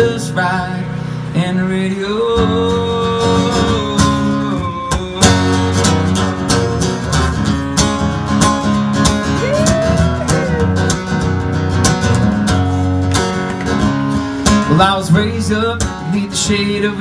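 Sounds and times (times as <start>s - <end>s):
strummed acoustic guitar: 0.0s - 17.0s
person singing: 1.4s - 6.4s, 9.3s - 10.9s.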